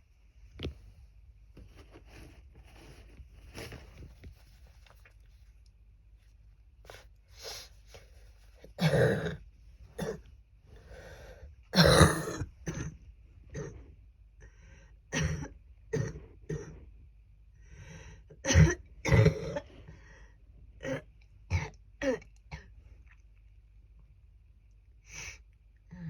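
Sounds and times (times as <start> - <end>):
woman coughing: 8.8 - 9.4, 10.0 - 10.2, 11.8 - 13.0, 15.1 - 16.8.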